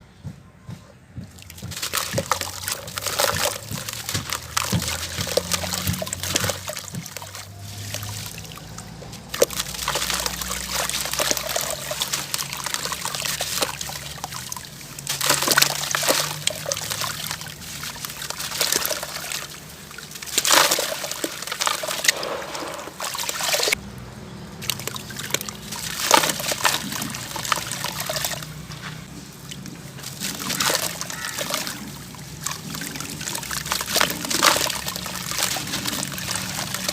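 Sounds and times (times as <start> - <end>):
water sloshing and trickling: 0.7 - 36.9
gritty pieces crunching: 1.2 - 23.8, 24.6 - 36.9.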